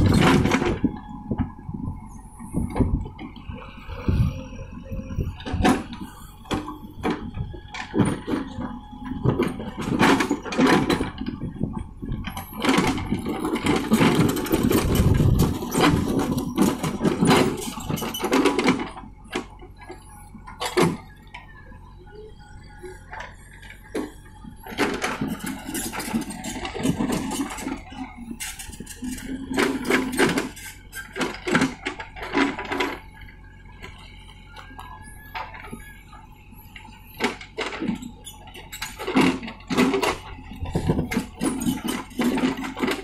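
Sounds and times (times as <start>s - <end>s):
diesel engine whining: 0.0s - 43.0s
knocks and clanks: 5.4s - 21.1s, 23.1s - 33.2s, 37.2s - 43.0s.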